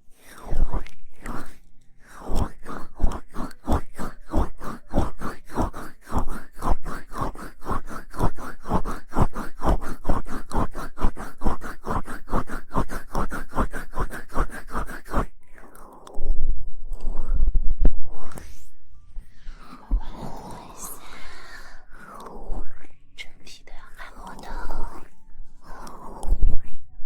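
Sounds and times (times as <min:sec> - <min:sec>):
hands rubbing microphone: 0:02.2 - 0:15.3.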